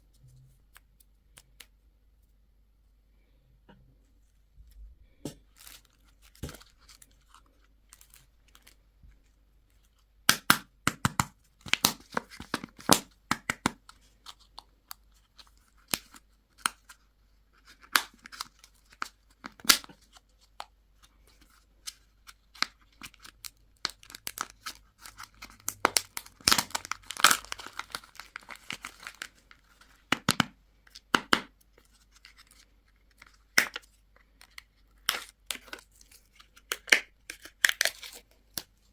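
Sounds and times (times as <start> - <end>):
packaging tearing and crinkling: 22.6 - 29.6, 34.5 - 38.7.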